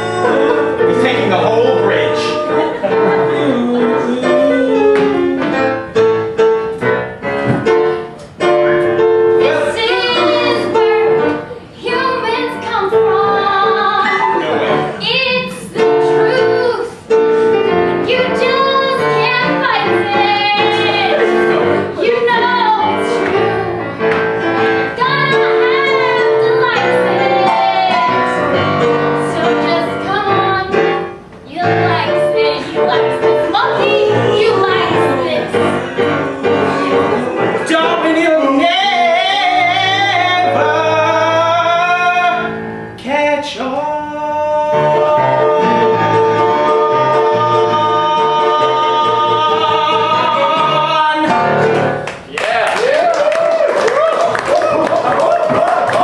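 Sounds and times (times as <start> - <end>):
woman singing with vibrato: 9.4 - 14.4, 18.0 - 24.0, 24.8 - 28.5, 29.1 - 42.4, 43.1 - 51.6.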